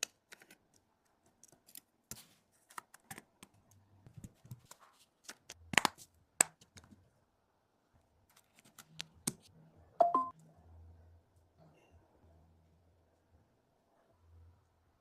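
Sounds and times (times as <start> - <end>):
two-pitch electronic chirp: 10.0 - 10.3.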